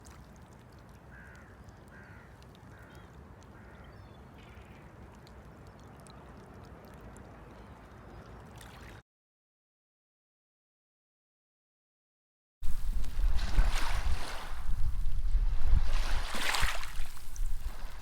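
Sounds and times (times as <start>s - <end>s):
sea waves washing on shore: 12.6s - 18.0s.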